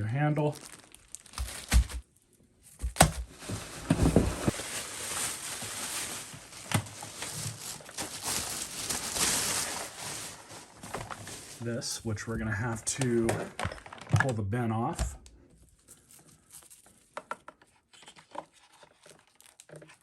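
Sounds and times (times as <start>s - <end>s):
continuous rustling: 3.3s - 11.8s
plastic parts knocking and clicking: 13.0s - 15.2s, 17.1s - 18.5s.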